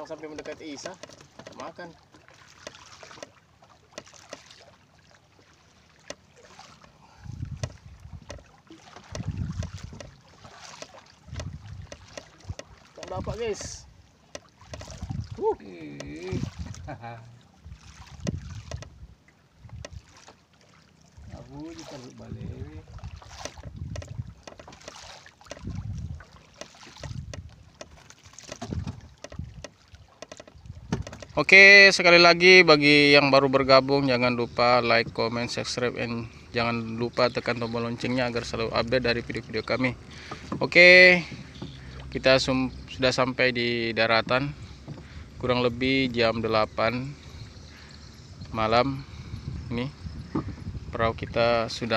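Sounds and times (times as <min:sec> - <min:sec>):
water knocking against hull: 0:00.0 - 0:51.9
low rumbling wind gusts: 0:07.1 - 0:08.3, 0:09.2 - 0:10.2, 0:11.2 - 0:14.0, 0:14.9 - 0:15.4, 0:16.2 - 0:20.0, 0:22.2 - 0:24.4, 0:25.6 - 0:26.3, 0:28.6 - 0:29.6, 0:30.6 - 0:31.6, 0:44.0 - 0:51.9.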